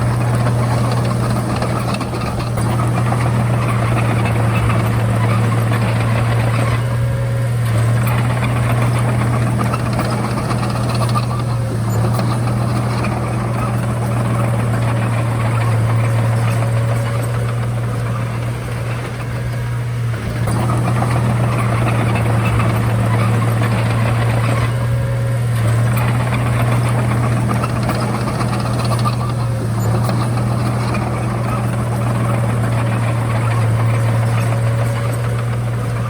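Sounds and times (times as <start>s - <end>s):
bulldozer diesel engine droning: 0.0s - 36.0s.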